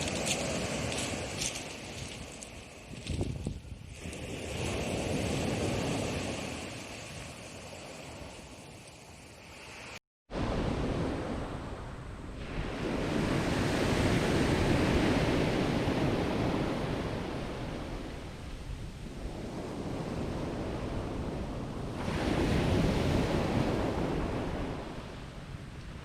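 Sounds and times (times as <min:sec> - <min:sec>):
sea waves breaking on shore: 0:00.0 - 0:03.0, 0:03.8 - 0:26.0
wind buffeting microphone: 0:00.0 - 0:08.4.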